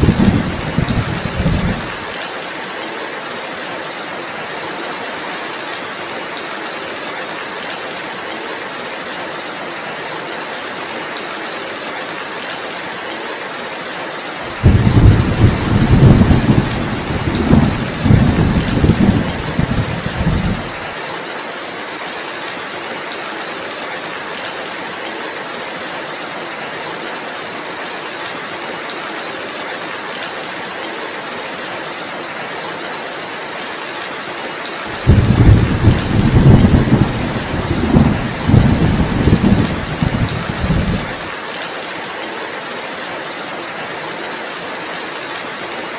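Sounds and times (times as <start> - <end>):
thunder rumbling: 0.0 - 2.0, 14.5 - 20.8, 34.9 - 41.3
heavy rain: 0.0 - 45.9.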